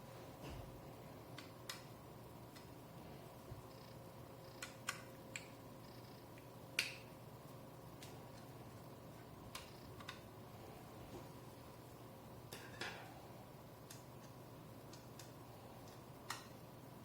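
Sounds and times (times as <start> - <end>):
faint steady hum: 0.0 - 17.0
small clicks and taps: 1.4 - 1.9, 4.5 - 5.6, 9.5 - 10.3, 13.8 - 16.6.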